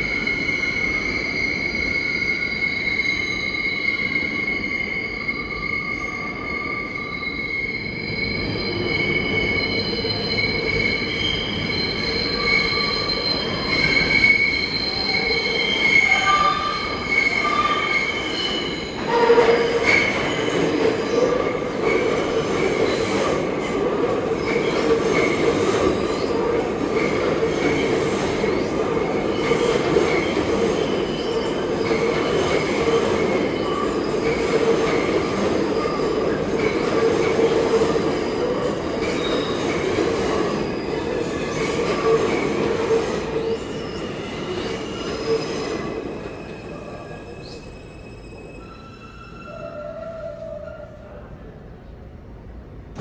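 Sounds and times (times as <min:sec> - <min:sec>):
train wheel squeal: 0:00.0 - 0:51.3
train wheels rumbling on rails: 0:07.1 - 0:49.5.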